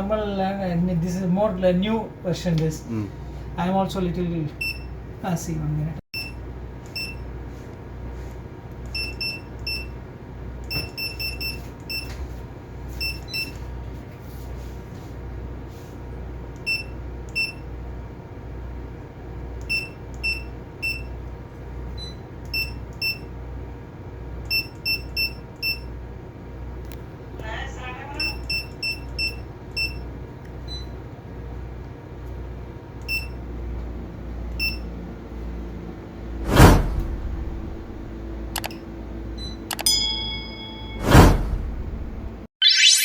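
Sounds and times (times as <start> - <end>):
low machinery hum with throb: 0.0 - 39.6
high electronic keypad beeps: 42.6 - 43.0.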